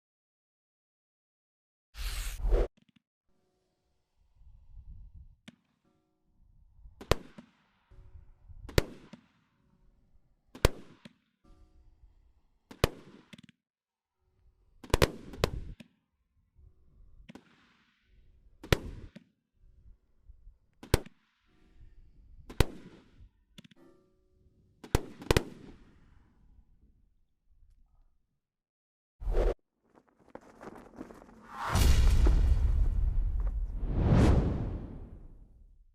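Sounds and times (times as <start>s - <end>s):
firework launch thumps: 31.5s - 35.4s.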